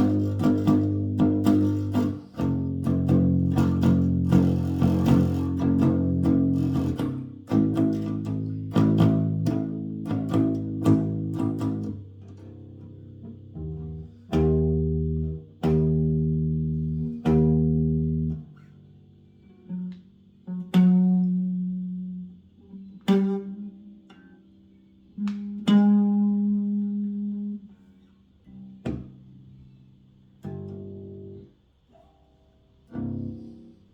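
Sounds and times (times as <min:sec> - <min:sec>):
electric bass guitar notes: 0:00.0 - 0:24.3.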